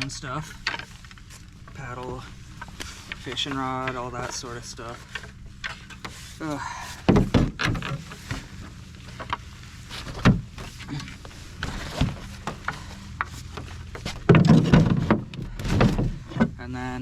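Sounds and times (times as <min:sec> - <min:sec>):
gear knocking and clicking: 0:07.0 - 0:16.6.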